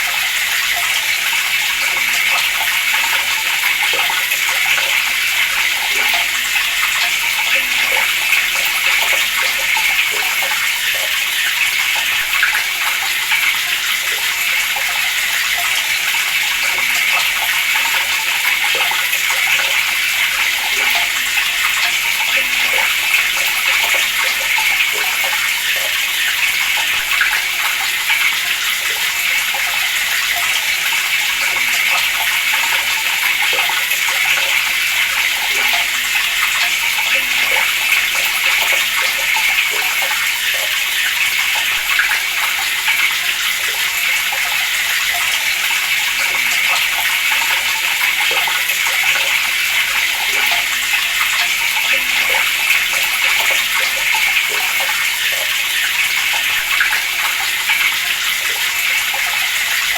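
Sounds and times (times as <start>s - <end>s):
water running from a tap: 0.0s - 59.9s.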